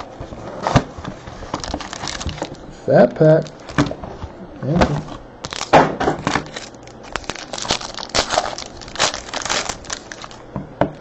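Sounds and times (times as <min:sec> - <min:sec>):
wrapper crinkling and crackling: 0:01.4 - 0:02.6, 0:03.4 - 0:03.9, 0:05.4 - 0:10.4.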